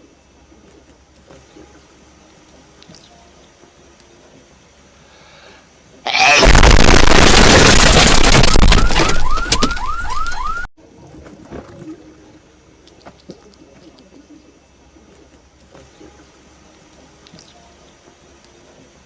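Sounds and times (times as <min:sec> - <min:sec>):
loud distorted sneeze effect: 0:06.1 - 0:07.0.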